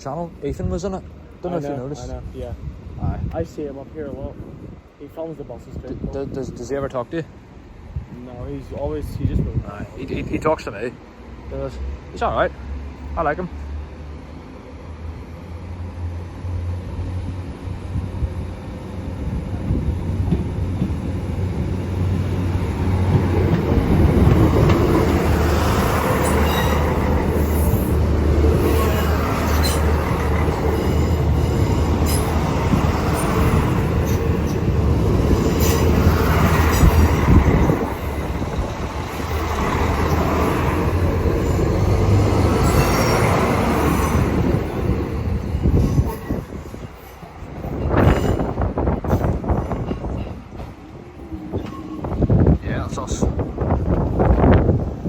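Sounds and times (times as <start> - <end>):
train engines humming: 0.0 - 55.0
wheels clicking and squealing: 28.6 - 31.4.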